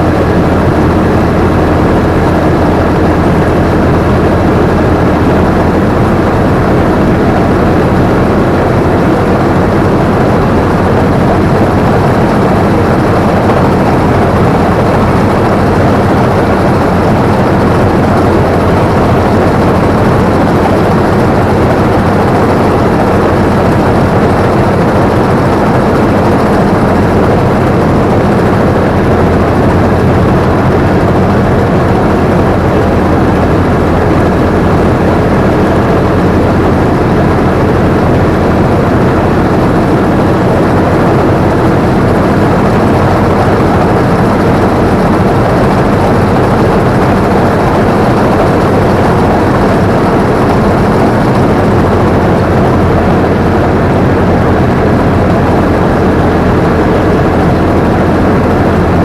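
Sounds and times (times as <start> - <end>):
diesel engine drone: 0.0 - 59.0
machinery clatter and whir: 0.0 - 59.0.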